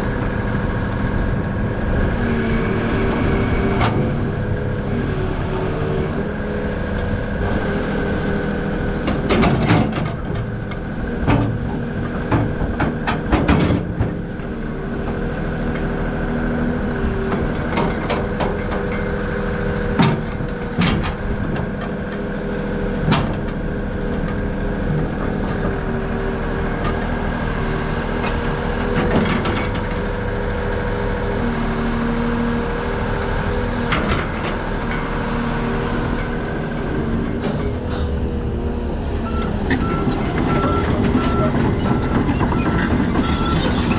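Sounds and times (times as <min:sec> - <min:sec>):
excavator diesel engine running: 0:00.0 - 0:43.9
machine knocks and clanks: 0:08.9 - 0:14.4, 0:17.2 - 0:19.1, 0:19.9 - 0:22.2, 0:23.0 - 0:23.6, 0:39.5 - 0:43.9.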